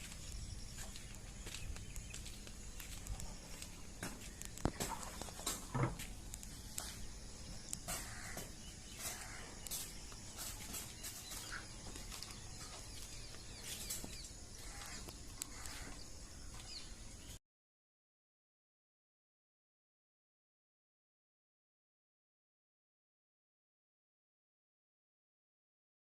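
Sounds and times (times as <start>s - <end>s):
faint bird chirps: 0.0s - 17.4s.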